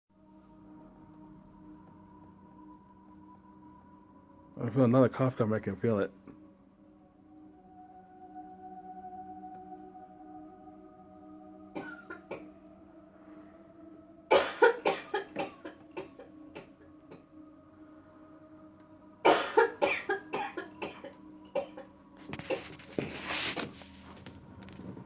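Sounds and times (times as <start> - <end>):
man coughing: 14.3 - 16.2, 19.3 - 21.8.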